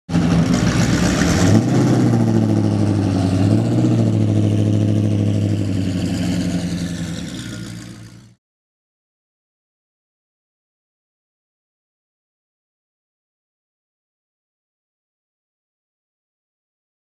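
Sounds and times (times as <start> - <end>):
engine humming: 0.1 - 8.4.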